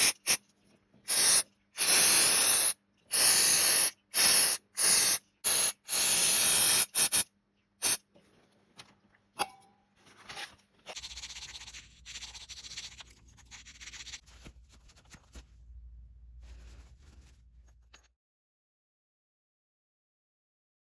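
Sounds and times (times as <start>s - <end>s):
spray hissing bursts: 1.1s - 7.2s.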